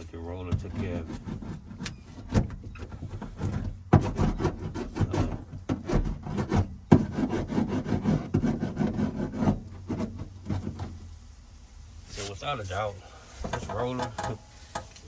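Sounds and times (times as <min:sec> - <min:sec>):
hand roller scraping over mat: 0:00.0 - 0:11.0.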